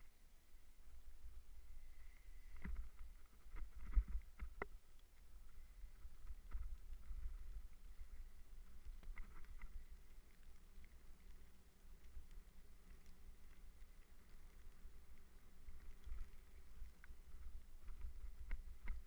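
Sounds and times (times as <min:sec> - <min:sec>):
wind rumble on microphone: 0:01.2 - 0:04.7.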